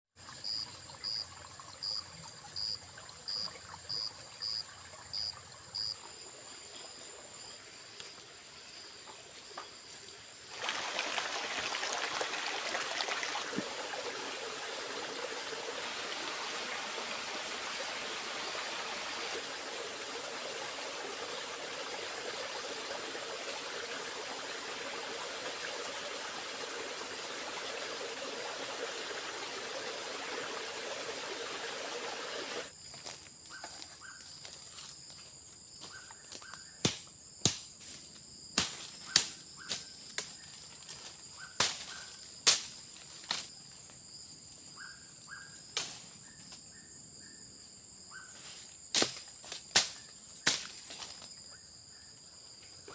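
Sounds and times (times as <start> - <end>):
insect drone: 0.4 - 52.9
rushing water: 10.1 - 32.7.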